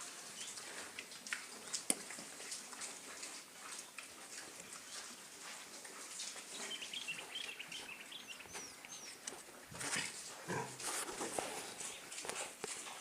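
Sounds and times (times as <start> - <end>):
pigs crunching and chewing: 0.0 - 13.0
pig grunts: 9.7 - 11.4.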